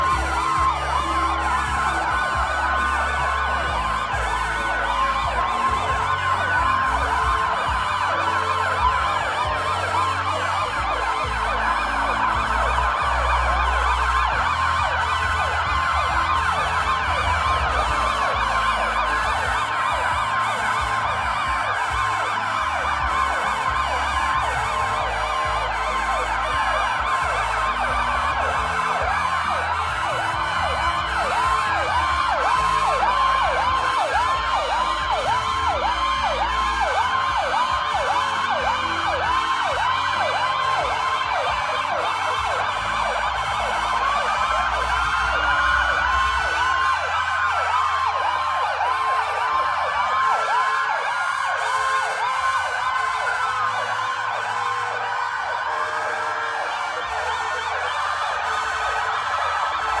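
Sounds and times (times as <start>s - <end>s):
emergency vehicle sirens wailing: 0.0s - 60.0s
steady siren tones: 0.0s - 60.0s.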